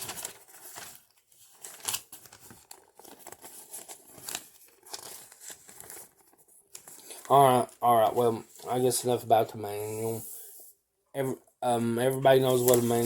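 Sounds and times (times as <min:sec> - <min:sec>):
paper rustling and crinkling: 0:00.0 - 0:09.0, 0:12.3 - 0:13.0.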